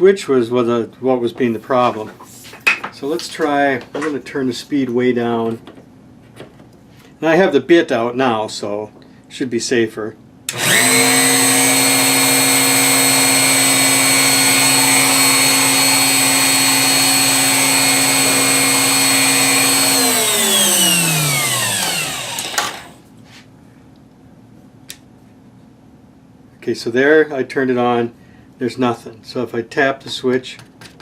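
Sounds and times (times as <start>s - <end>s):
router motor whining: 10.5s - 23.0s.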